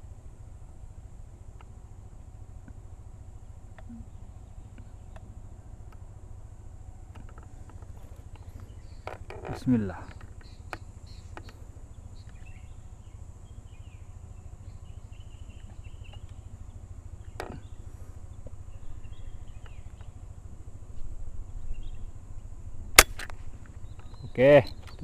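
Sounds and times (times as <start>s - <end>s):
small birds chirping: 0.0s - 25.0s
steady low rumble: 0.0s - 25.0s
air rifle shot: 23.0s - 23.5s.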